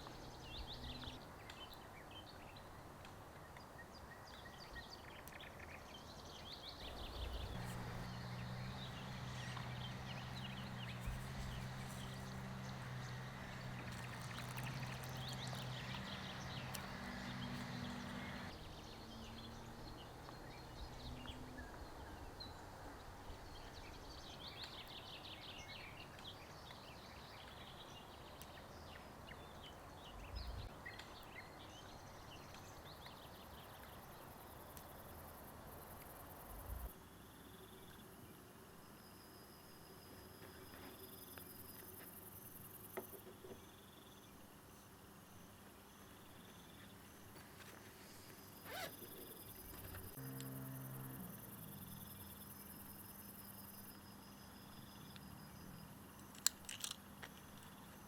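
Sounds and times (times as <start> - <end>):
small birds chirping: 3.3 - 35.0, 46.2 - 50.2.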